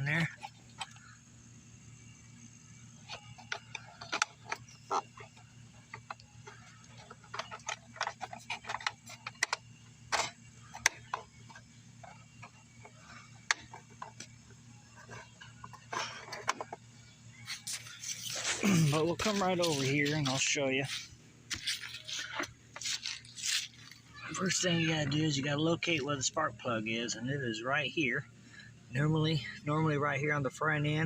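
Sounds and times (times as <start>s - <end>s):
steady low hum: 0.0s - 31.0s
clicks and knocks of handling parts: 3.1s - 14.3s, 15.0s - 16.9s.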